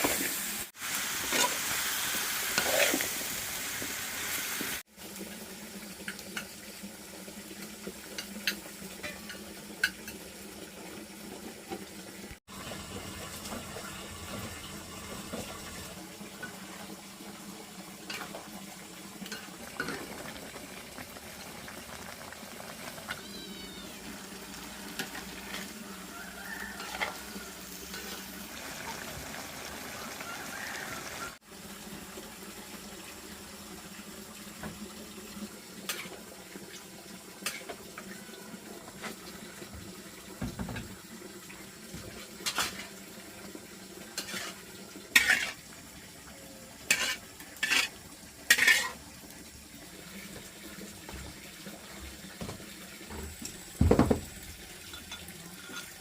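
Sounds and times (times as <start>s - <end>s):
hiss of water or frying: 0.0s - 56.0s
dishes and utensils clattering: 26.8s - 28.2s, 42.4s - 42.9s, 45.2s - 45.6s, 46.9s - 49.0s, 52.5s - 56.0s.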